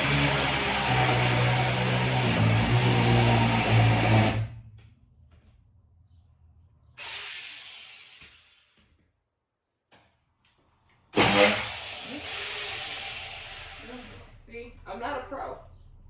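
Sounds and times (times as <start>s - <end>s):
mini chainsaw motor: 0.0s - 4.4s, 11.2s - 14.3s.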